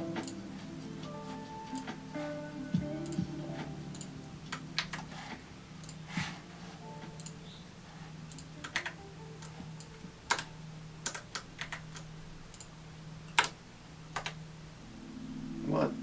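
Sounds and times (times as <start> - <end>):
steady low hum: 0.0 - 16.0
computer keyboard typing: 3.9 - 5.2, 8.3 - 12.7, 13.3 - 14.4.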